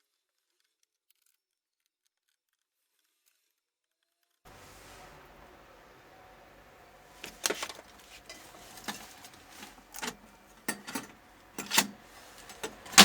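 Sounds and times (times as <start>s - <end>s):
light metallic clicks and clinks: 4.5s - 13.0s.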